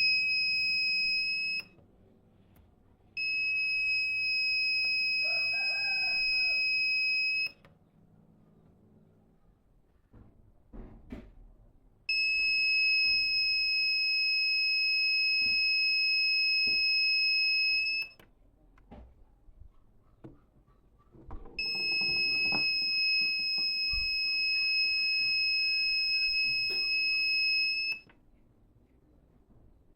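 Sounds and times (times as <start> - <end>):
high-pitched alarm buzzer tone: 3.2 - 7.5, 21.6 - 28.0.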